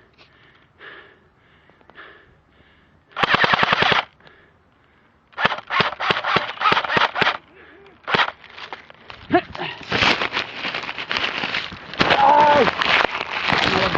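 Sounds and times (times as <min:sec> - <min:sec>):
airsoft gun firing: 0:03.2 - 0:04.1, 0:05.4 - 0:07.4, 0:08.1 - 0:08.4.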